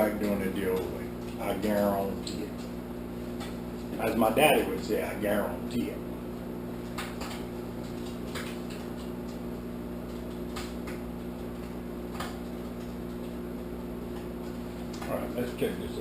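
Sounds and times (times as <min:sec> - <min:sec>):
bacon crackling: 0:00.0 - 0:05.0
microwave oven humming: 0:00.0 - 0:16.0.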